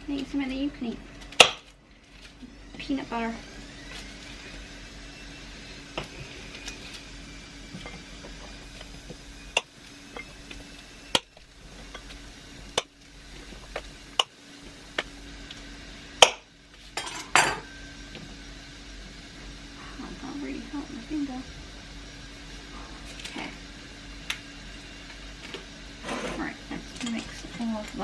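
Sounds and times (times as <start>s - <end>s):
faint steady hum: 0.0s - 28.0s
kitchen utensils and dishes clinking: 17.0s - 17.7s, 26.0s - 28.0s.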